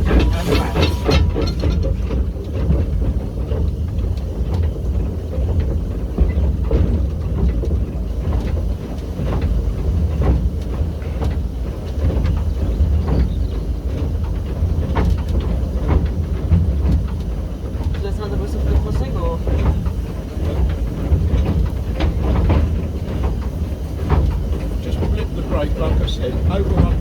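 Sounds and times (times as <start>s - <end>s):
metallic knocks and clanks: 0.0s - 2.2s
steam locomotive rumble: 0.0s - 27.0s.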